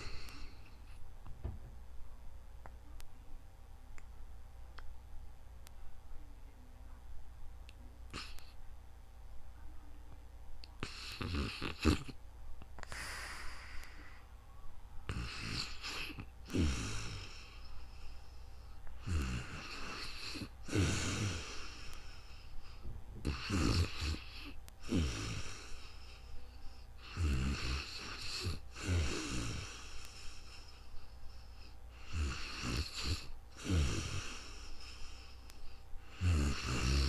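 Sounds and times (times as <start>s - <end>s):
person snoring: 10.8s - 12.2s, 15.1s - 17.7s, 19.0s - 22.3s, 23.2s - 26.2s, 27.0s - 30.9s, 32.0s - 37.0s.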